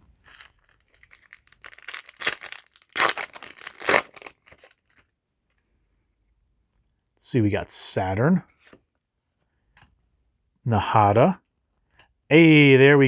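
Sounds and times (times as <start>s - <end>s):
foil wrapper crinkling: 0.2s - 5.0s
foil wrapper ripping: 0.3s - 5.0s.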